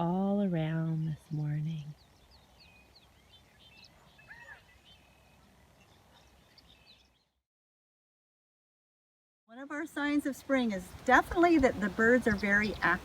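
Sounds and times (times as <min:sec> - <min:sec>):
birds chirping: 0:00.0 - 0:07.4, 0:09.6 - 0:13.0.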